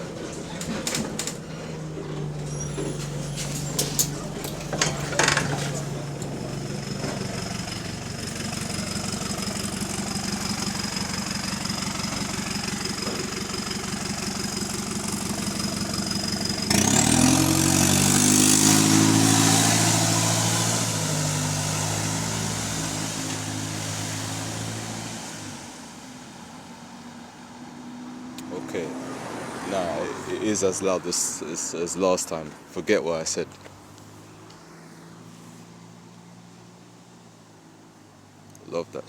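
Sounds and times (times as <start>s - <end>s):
bus diesel engine: 0.0s - 39.0s
exhaust leak hissing: 2.4s - 26.3s.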